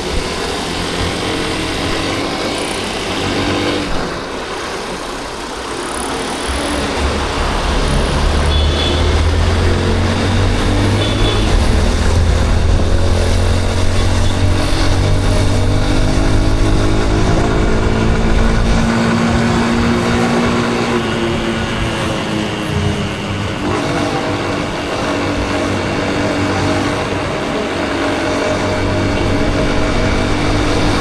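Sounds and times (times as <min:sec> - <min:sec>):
motorcycle engine running: 0:00.0 - 0:31.0
deep rumble: 0:06.5 - 0:19.0.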